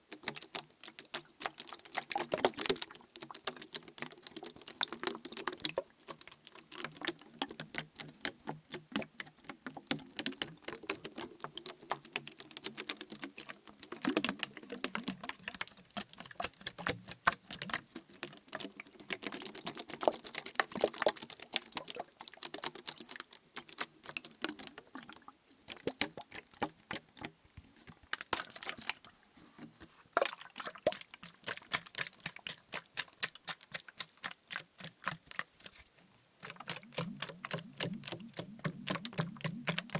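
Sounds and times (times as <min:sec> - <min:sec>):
liquid sloshing in bottle: 0:28.1 - 0:39.9.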